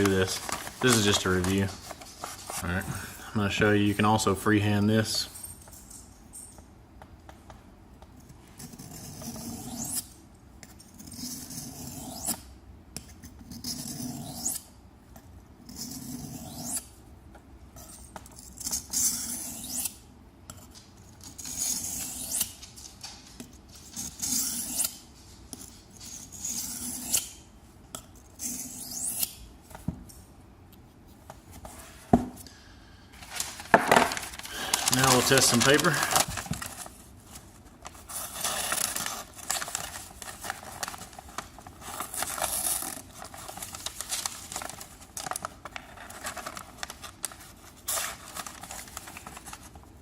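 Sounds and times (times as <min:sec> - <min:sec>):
knife scraping on whetstone: 0:26.1 - 0:27.3.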